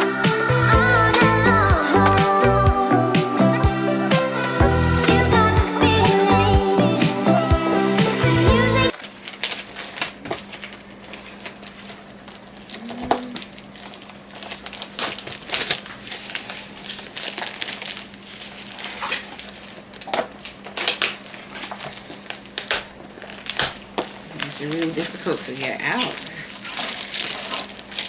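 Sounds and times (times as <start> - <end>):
plastic packaging crinkling: 8.9 - 28.0.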